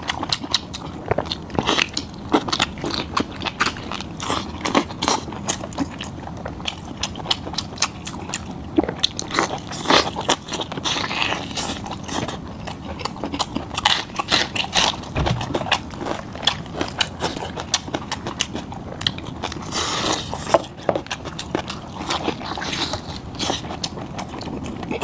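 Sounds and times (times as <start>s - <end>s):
person chewing and smacking: 15.2s - 16.6s.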